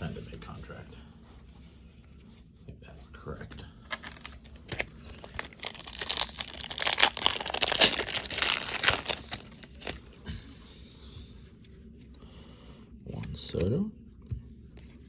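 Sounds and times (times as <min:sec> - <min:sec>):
wrapper crinkling and tearing: 0:03.9 - 0:10.1.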